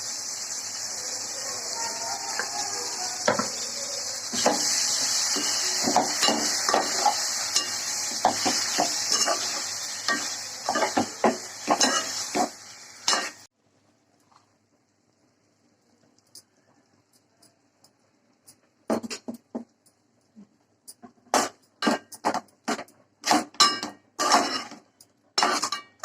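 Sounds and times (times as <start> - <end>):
curry sizzling in a pan: 0.0 - 13.6, 21.0 - 26.0
spoon scraping a pan: 4.3 - 13.5, 21.0 - 26.0.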